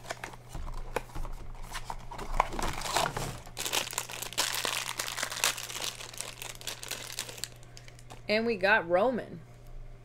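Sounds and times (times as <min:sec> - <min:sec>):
packaging crinkling being torn open: 0:01.8 - 0:08.2.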